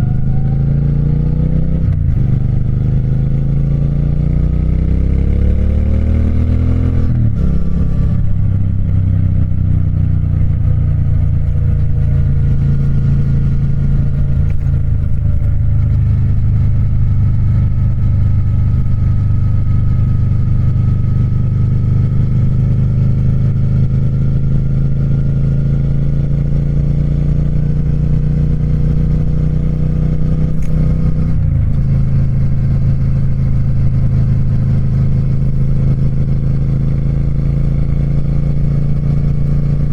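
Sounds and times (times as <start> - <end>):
motorcycle engine revving: 0.0 - 39.9
gear change: 30.4 - 34.4.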